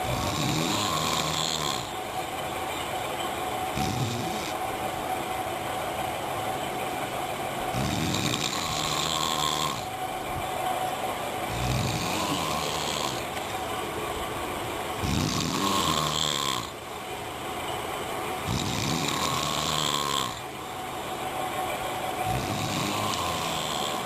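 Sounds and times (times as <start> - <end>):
person snoring: 0.0 - 2.0, 3.7 - 4.6, 7.7 - 10.0, 11.5 - 13.6, 15.0 - 16.8, 18.4 - 20.5, 22.2 - 24.0.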